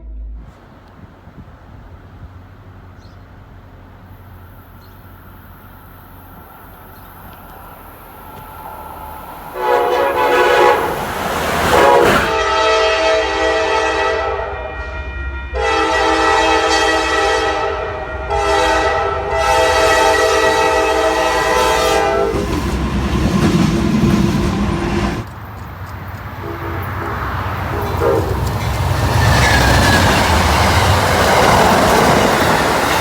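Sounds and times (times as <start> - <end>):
train rumbling: 0.0 - 33.0
train horn blasts: 9.5 - 22.8, 26.4 - 32.5.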